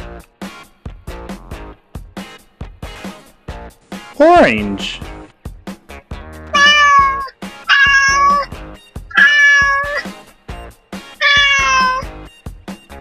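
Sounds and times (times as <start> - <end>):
background music with steady beat: 0.0 - 9.1, 10.0 - 13.0
cat meowing: 6.6 - 10.2, 11.2 - 12.1.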